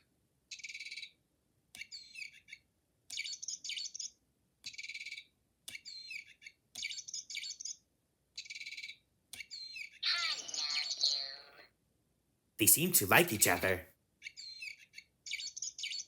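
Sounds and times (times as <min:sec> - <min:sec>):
toy bird chirping and trilling: 0:00.5 - 0:01.2, 0:01.8 - 0:11.6, 0:14.2 - 0:16.0.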